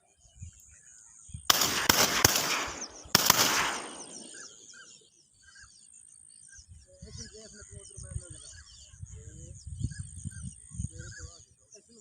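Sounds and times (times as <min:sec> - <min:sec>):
shotgun blasts: 0:01.5 - 0:04.7.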